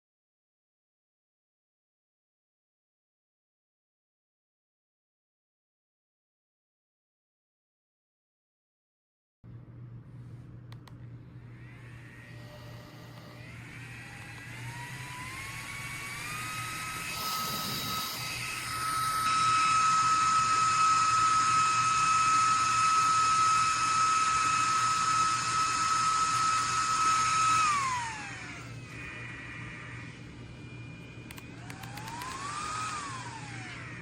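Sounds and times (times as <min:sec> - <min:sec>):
small fan motor whirring: 0:11.2 - 0:34.0.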